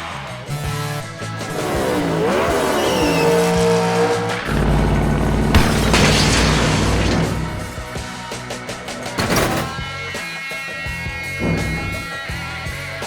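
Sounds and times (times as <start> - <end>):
background music: 0.0 - 13.0
engines revving: 0.5 - 8.0, 11.4 - 12.2
deep heavy engine rumble: 1.2 - 8.0, 11.4 - 12.2.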